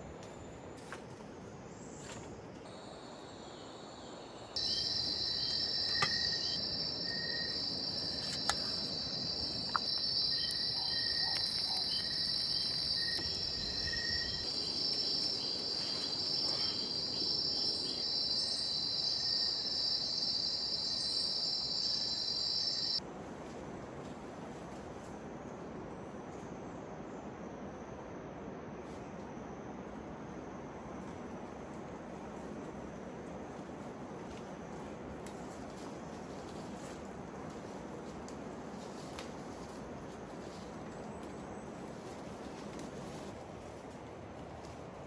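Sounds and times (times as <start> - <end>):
faint insect chirps: 1.7 - 23.0
insects trilling chorus: 2.7 - 23.0.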